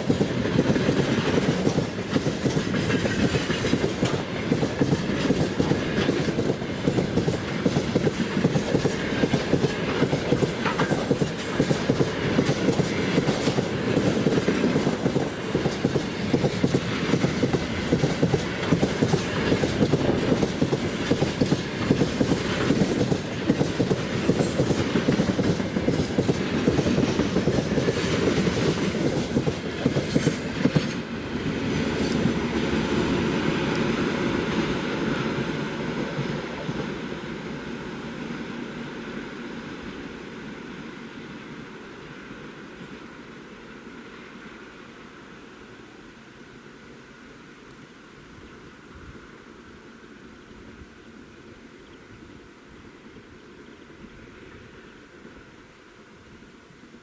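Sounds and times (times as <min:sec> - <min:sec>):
freight train wheels clattering: 0:00.0 - 0:32.7.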